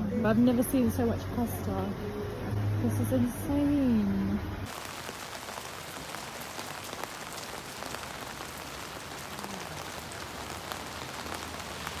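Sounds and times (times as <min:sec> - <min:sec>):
steady rain falling: 0:04.6 - 0:12.0.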